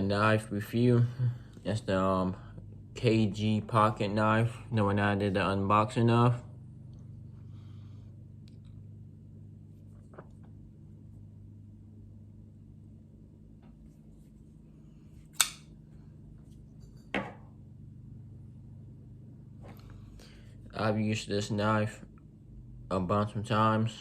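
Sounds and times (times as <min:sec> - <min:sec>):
low steady hum: 0:00.0 - 0:24.0.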